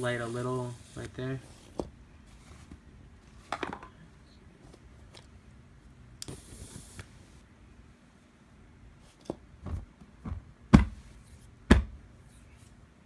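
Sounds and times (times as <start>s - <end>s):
electric arc lighter hissing: 0.0s - 1.4s, 6.2s - 7.1s.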